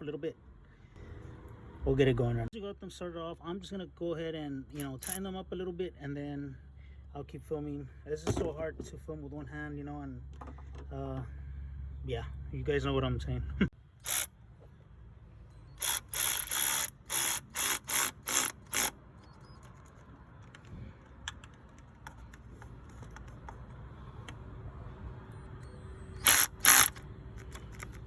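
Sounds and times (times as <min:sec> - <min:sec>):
electric ratchet bursts: 0:04.8 - 0:05.2, 0:14.0 - 0:14.3, 0:15.7 - 0:19.0, 0:25.9 - 0:28.0.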